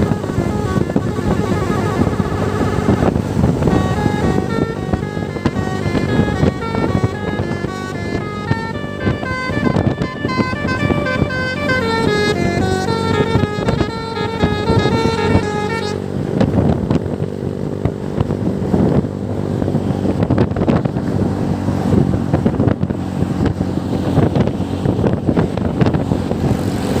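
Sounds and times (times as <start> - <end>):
bus musical horn: 0.0 - 17.4
bus engine and road noise: 0.0 - 27.0.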